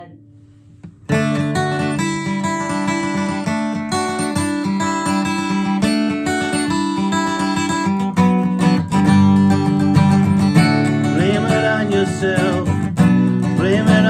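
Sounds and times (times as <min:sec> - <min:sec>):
acoustic guitar strumming: 0:00.0 - 0:14.0
person singing: 0:10.8 - 0:14.0.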